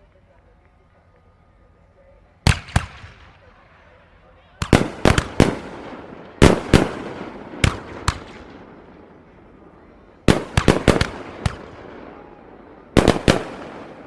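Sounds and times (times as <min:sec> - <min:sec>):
fireworks bursting in sharp bangs: 0:02.4 - 0:03.6, 0:04.5 - 0:14.0.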